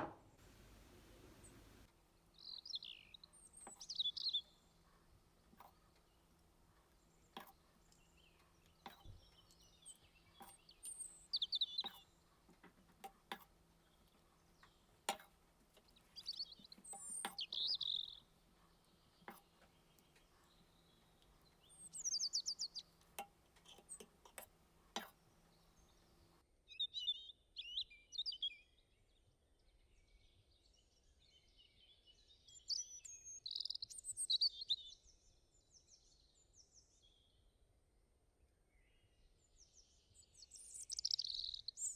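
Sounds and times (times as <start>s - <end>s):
birds chirping: 0.0s - 26.4s
faint low hum: 0.0s - 26.4s.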